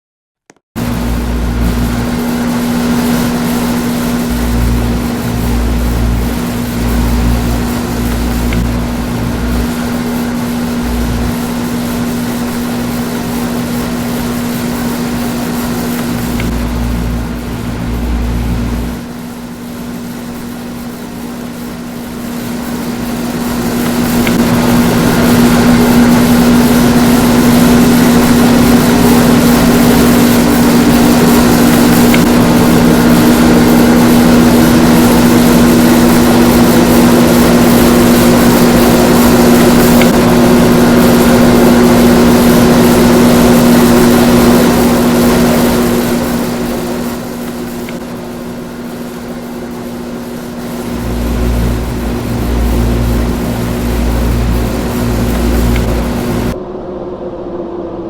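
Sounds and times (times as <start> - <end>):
air conditioner hum: 0.8 - 57.9
rising tone: 50.6 - 56.6.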